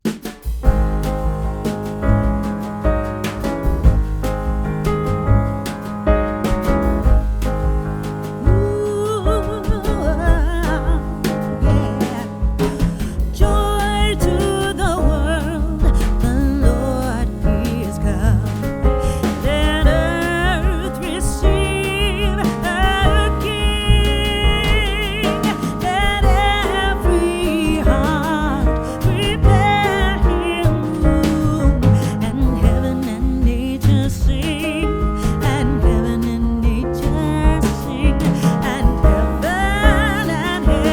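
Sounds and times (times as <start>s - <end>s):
bass beat: 0.0s - 40.9s
song with singing voice: 8.4s - 40.9s.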